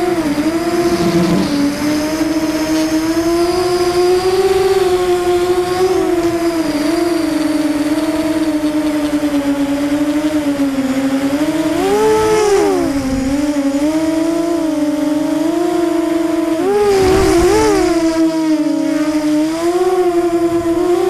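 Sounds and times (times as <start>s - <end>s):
rushing noise: 0.0s - 2.7s
drone motors whining: 0.0s - 21.0s.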